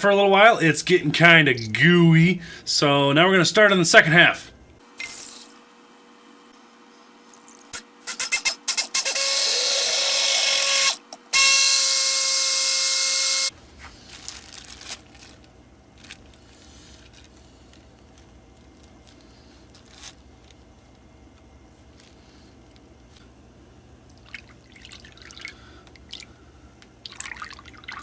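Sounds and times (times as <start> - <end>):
stick blender running: 8.0 - 13.6.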